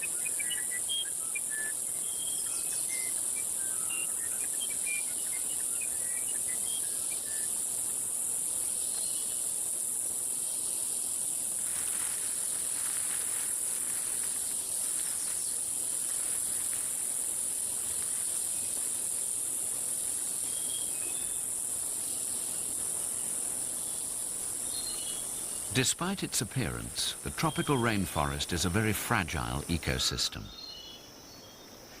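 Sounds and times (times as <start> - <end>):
insect chorus drone: 0.0 - 32.0.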